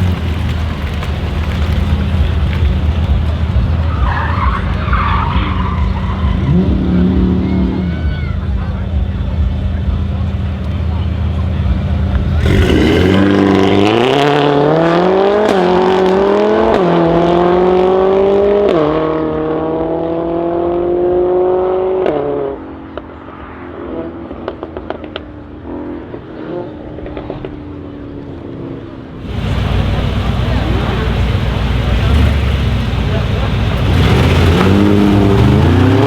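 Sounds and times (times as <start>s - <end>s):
exhaust crackles and pops: 0.0s - 6.8s, 9.8s - 14.2s, 29.2s - 36.0s
car engine accelerating hard: 0.0s - 23.0s, 29.2s - 36.0s.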